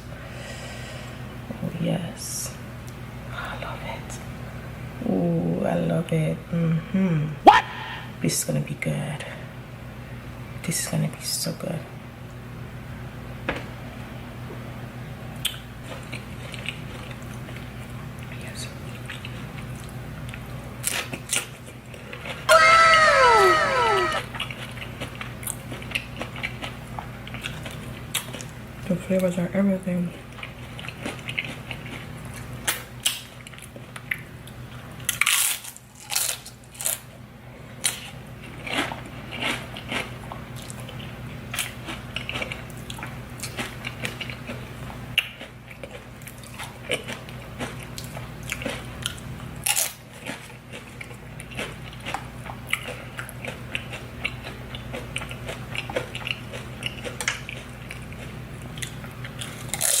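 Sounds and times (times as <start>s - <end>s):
crunching nacho chips: 20.8s - 28.6s, 35.0s - 37.0s, 37.8s - 44.6s, 45.2s - 60.0s.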